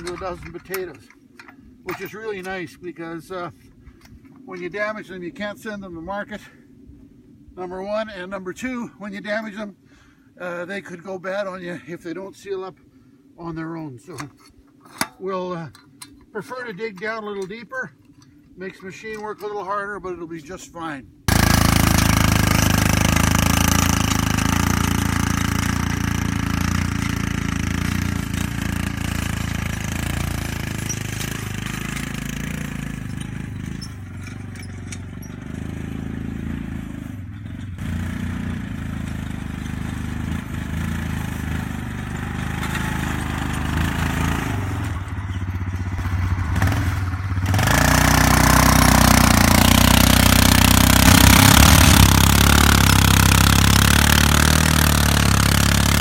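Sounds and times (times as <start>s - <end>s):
atv engine under load: 0.0s - 2.6s, 21.3s - 56.0s.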